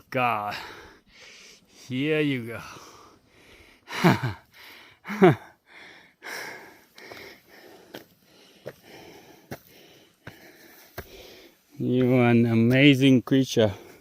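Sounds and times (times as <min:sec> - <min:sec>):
person breathing heavily: 0:00.4 - 0:01.9, 0:02.5 - 0:11.8, 0:13.6 - 0:14.0.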